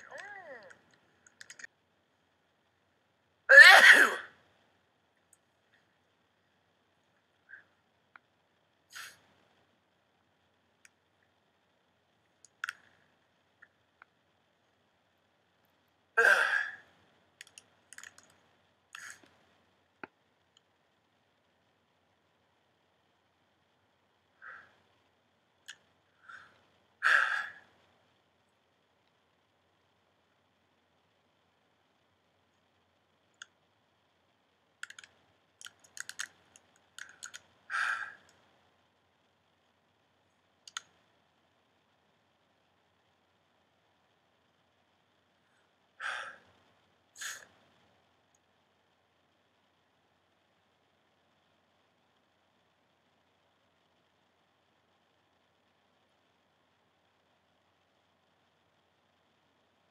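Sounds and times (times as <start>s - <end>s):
man sneezing: 3.5s - 4.3s
person sneezing: 3.5s - 4.3s, 16.2s - 16.8s, 47.2s - 47.5s
faint short clicks: 34.8s - 37.5s, 40.6s - 41.0s.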